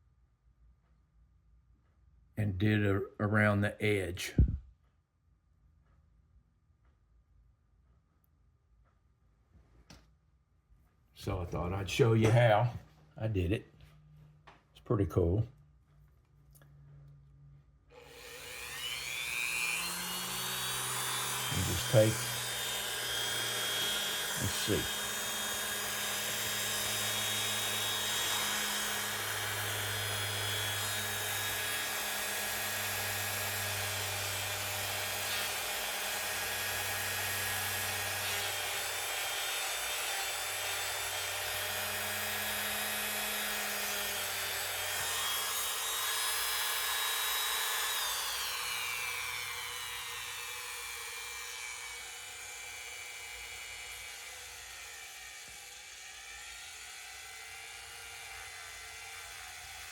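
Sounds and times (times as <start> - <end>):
rotary tool whining: 17.9 - 59.9.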